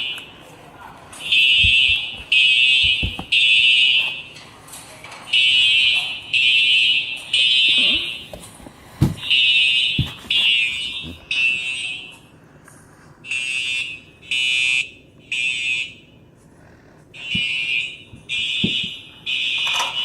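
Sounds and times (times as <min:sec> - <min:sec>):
fire alarm beeps: 0:01.2 - 0:04.3, 0:05.3 - 0:08.4, 0:09.2 - 0:12.2, 0:13.3 - 0:16.2, 0:17.2 - 0:20.0.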